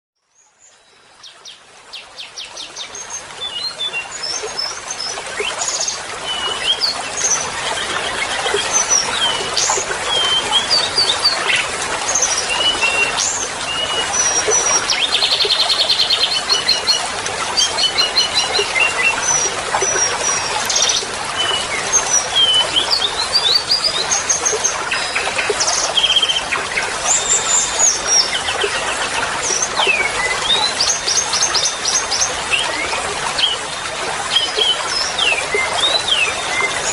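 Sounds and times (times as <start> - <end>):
songbird chirping and trilling: 17.6 - 26.5.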